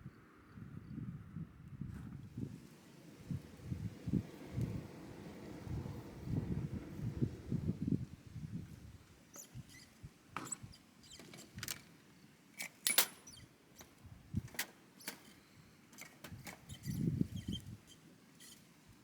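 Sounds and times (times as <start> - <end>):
small metallic clinks: 12.6 - 13.9.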